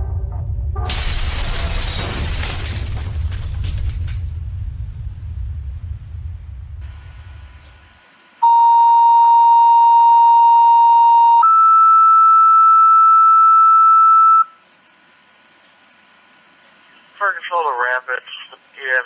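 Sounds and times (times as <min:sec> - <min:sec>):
two-tone radio page tones: 0:08.4 - 0:14.5
faint radio hiss: 0:14.8 - 0:19.0.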